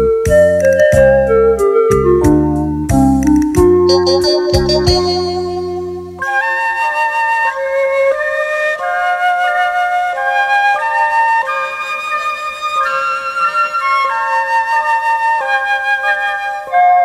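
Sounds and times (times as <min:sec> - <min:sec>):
flute melody: 0:03.8 - 0:17.0.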